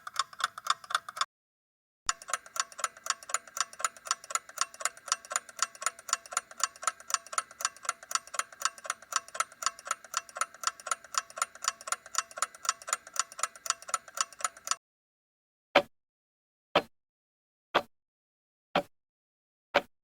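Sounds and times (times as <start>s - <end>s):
clock ticking: 0.0s - 1.3s, 2.1s - 14.8s.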